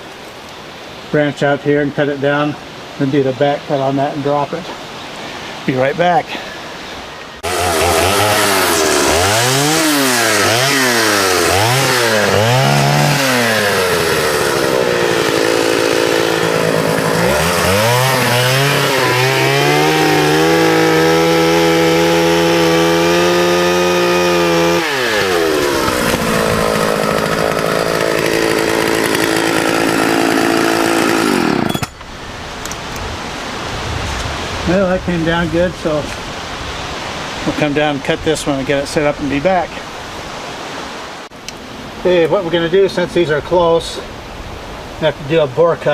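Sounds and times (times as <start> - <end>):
chainsaw revving and cutting: 7.4 - 32.0.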